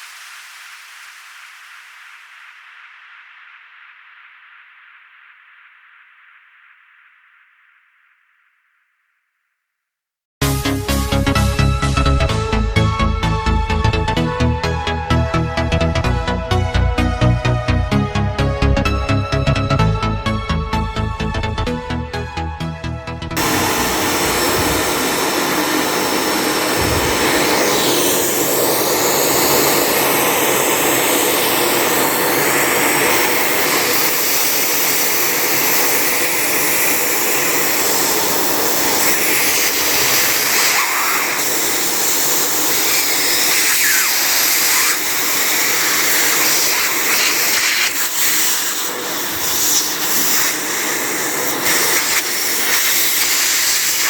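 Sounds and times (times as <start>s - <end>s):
vacuum cleaner running: 23.4s - 54.0s.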